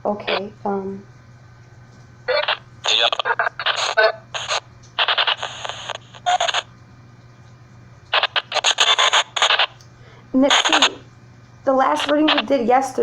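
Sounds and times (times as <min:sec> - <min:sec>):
steady low hum: 0:00.0 - 0:13.0
garbled voice-like fragments: 0:02.3 - 0:06.6, 0:08.2 - 0:09.8, 0:10.5 - 0:11.0, 0:12.0 - 0:12.5
hissy static bursts: 0:02.3 - 0:06.7, 0:08.1 - 0:09.8, 0:10.5 - 0:11.0, 0:12.0 - 0:12.5.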